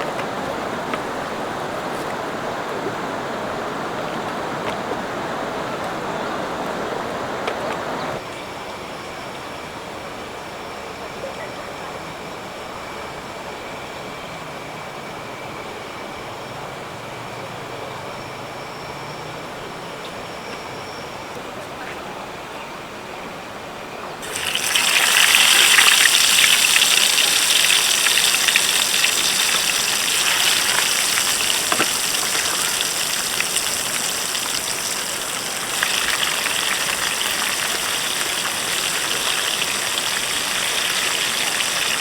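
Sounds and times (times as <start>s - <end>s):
river water rushing: 0.0s - 8.2s, 24.2s - 42.0s.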